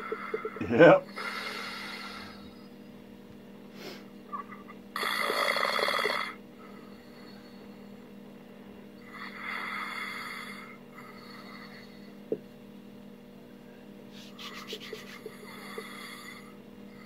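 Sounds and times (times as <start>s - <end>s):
man breathing while asleep: 0.0s - 2.7s, 3.7s - 4.1s, 5.0s - 8.1s, 9.0s - 12.3s, 15.1s - 17.0s
electrical hum: 0.0s - 17.0s.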